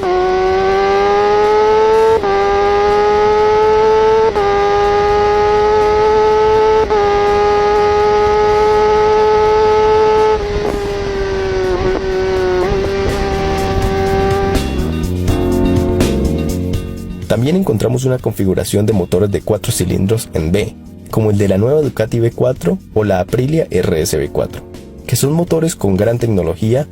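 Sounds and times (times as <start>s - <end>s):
motorcycle engine revving high: 0.0s - 17.3s.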